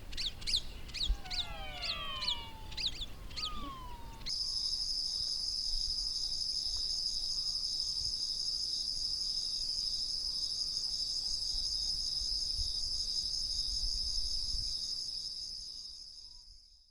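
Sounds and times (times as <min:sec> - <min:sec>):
cricket trilling: 0:00.9 - 0:04.4.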